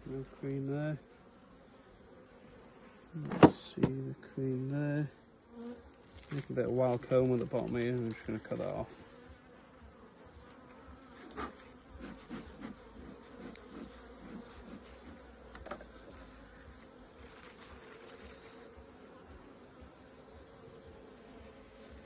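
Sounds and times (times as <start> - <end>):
bees humming: 0.0 - 22.0
comb being cut: 11.1 - 16.3.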